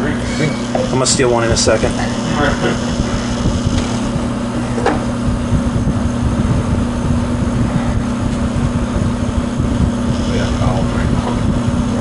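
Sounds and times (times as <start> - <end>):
air conditioner hum: 0.0 - 12.0.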